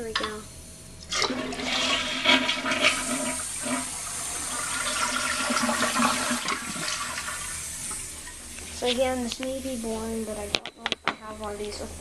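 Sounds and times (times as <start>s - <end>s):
toilet flushing: 1.1s - 8.5s.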